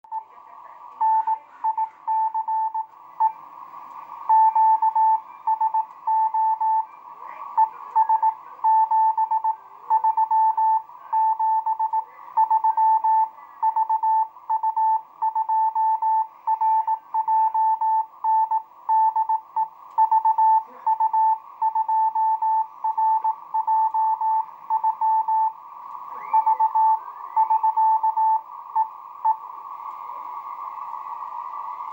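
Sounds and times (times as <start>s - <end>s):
radio band noise hiss: 0.1s - 14.5s, 24.2s - 31.9s
morse code beeping: 1.0s - 2.9s, 8.0s - 25.6s, 26.4s - 29.4s.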